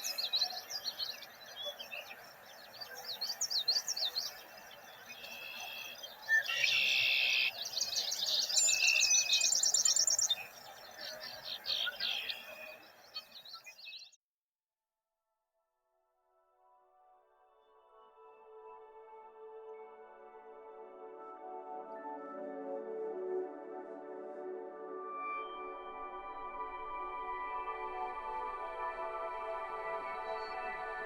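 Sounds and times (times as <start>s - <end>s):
birds chirping: 0.0s - 14.2s.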